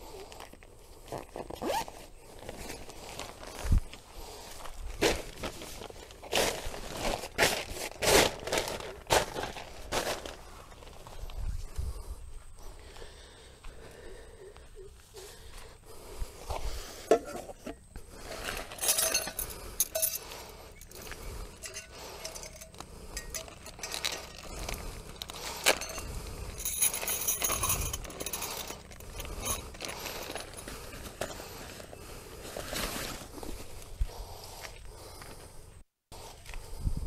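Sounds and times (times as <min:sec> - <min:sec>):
small objects clinking: 0:18.3 - 0:31.4.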